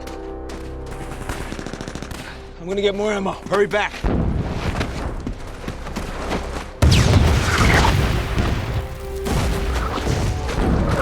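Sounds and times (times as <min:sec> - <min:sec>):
film score music: 0:00.0 - 0:11.0
loud explosion: 0:06.8 - 0:11.0.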